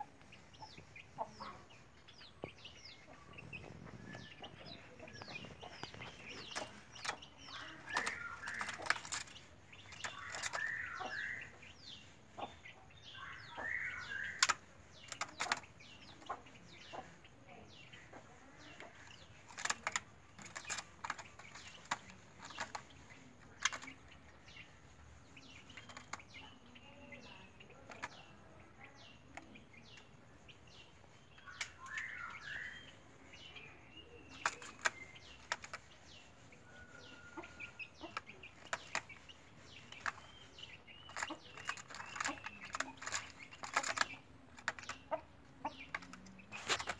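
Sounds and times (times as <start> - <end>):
bird chick chirping: 0.0 - 46.9.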